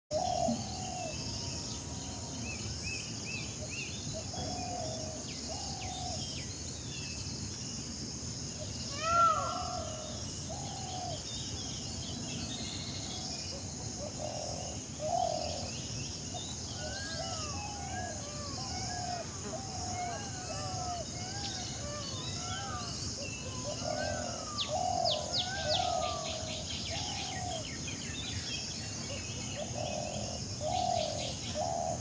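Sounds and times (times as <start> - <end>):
steady background hiss: 0.2 - 32.0.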